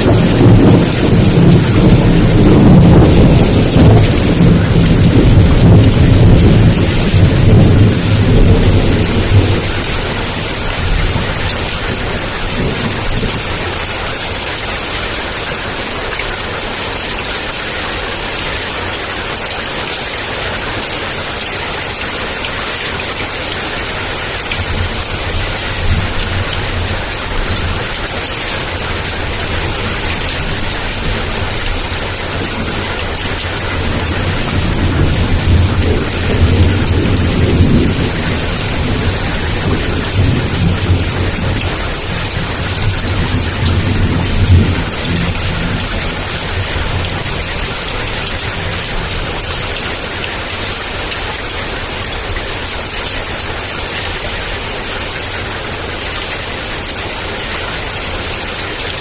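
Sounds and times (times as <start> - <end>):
thunder rumbling: 0.0 - 14.4, 24.3 - 49.3
heavy rain falling: 0.0 - 59.0.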